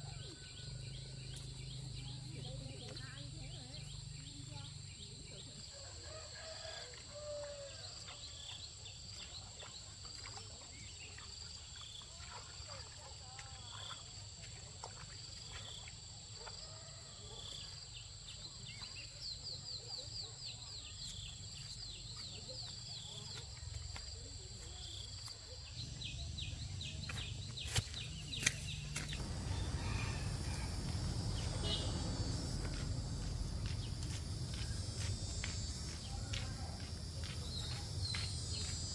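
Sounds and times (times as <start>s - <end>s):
low rumble: 29.0s - 37.6s.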